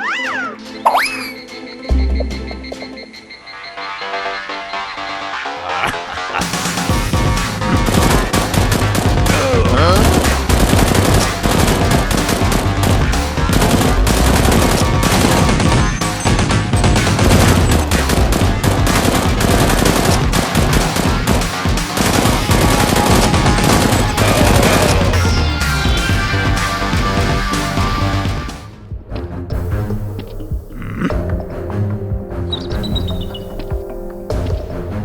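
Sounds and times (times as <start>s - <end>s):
background music: 0.0s - 35.0s
automatic gunfire: 7.7s - 25.2s.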